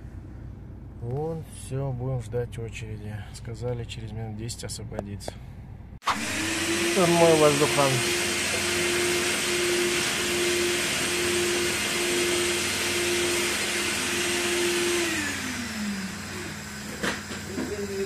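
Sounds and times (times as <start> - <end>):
electric motor humming and hissing: 6.0 - 18.0.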